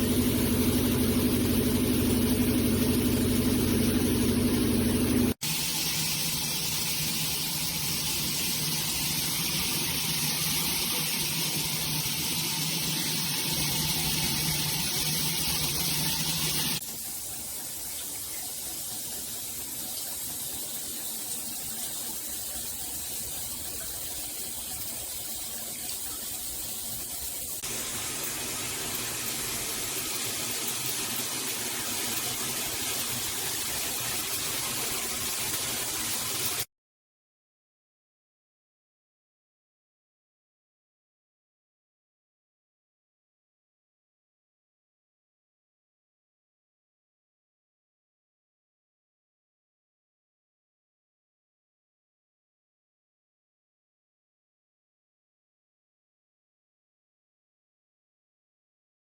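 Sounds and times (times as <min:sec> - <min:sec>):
shower water spraying: 0:00.0 - 0:36.7.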